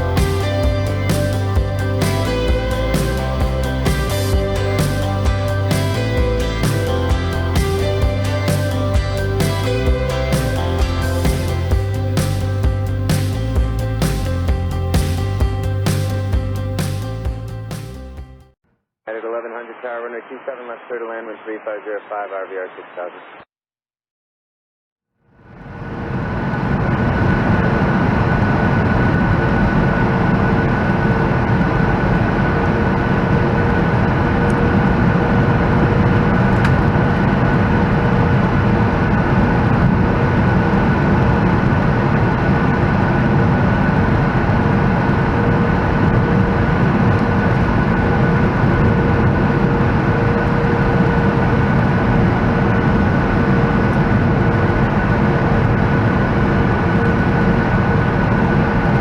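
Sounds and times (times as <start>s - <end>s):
jet engines in cabin: 25.3s - 59.0s.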